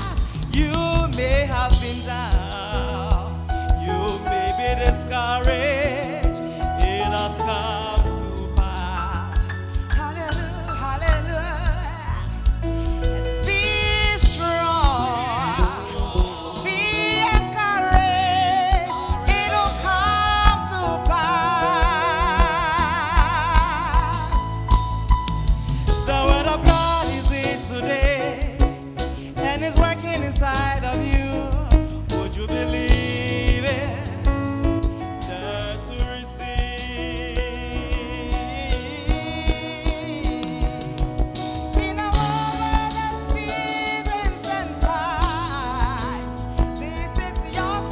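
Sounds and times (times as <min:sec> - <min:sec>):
gospel band with steady beat: 0:00.0 - 0:47.9.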